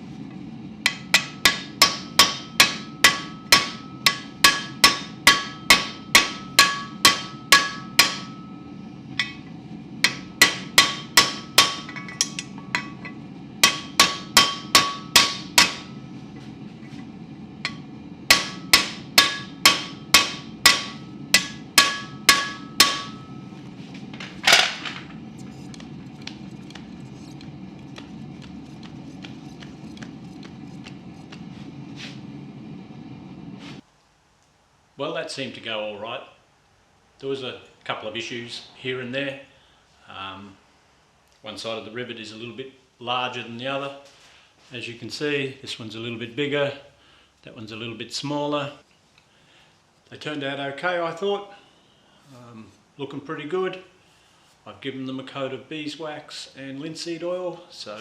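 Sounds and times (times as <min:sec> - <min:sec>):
steady low hum: 0:00.0 - 0:58.0
hammer striking hot rivet: 0:00.8 - 0:08.4, 0:09.2 - 0:16.0, 0:17.6 - 0:23.4.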